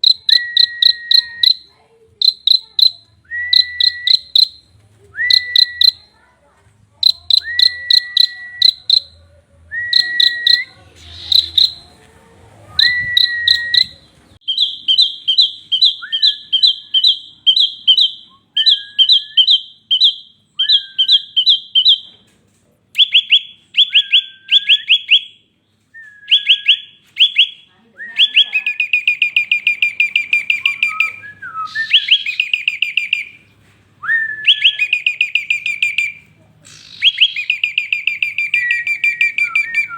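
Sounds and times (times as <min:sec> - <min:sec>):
bird singing: 0:00.0 - 0:06.2, 0:07.0 - 0:11.9, 0:12.8 - 0:22.0, 0:26.0 - 0:39.9.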